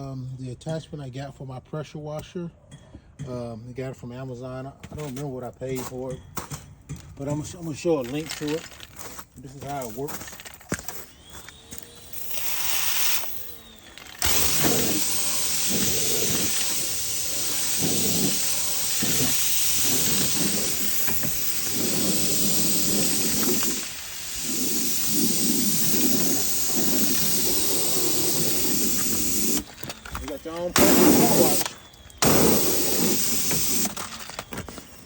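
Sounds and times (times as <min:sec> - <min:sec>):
pressure washer spray: 0:12.0 - 0:34.3.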